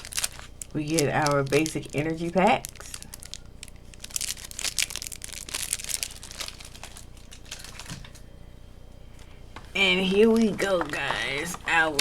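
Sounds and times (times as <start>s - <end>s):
plastic wrapping crinkling: 0.0s - 8.2s.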